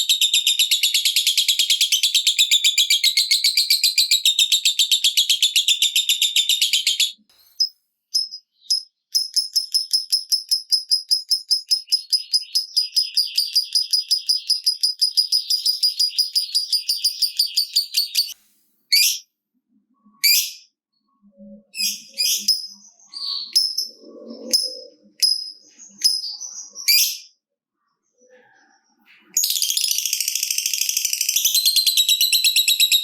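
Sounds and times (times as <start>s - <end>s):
lovebird chattering trill: 8.2s - 19.2s.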